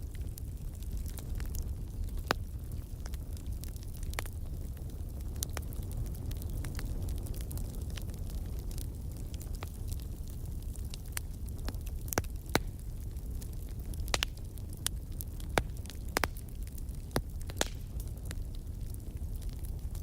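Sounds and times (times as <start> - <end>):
wood fire crackling: 0.0 - 20.0.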